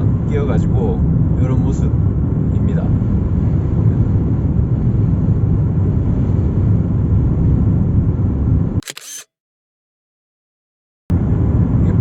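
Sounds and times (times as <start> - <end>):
road and engine rumble: 0.0 - 9.0, 11.1 - 12.0
brief crackle: 8.8 - 9.3.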